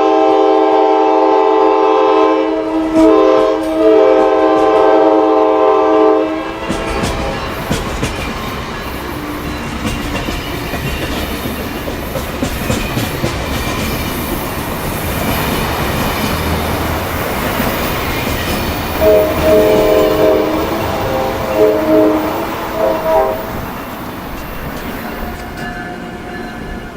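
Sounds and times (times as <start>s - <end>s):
train air chime horn: 0.0s - 7.7s, 18.5s - 26.9s
train wheels rushing on rails: 1.6s - 26.9s.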